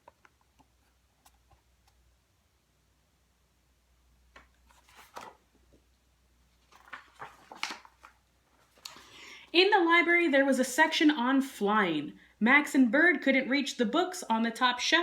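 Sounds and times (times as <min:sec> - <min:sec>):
paper pages rustling: 0:04.3 - 0:05.9, 0:06.5 - 0:09.2.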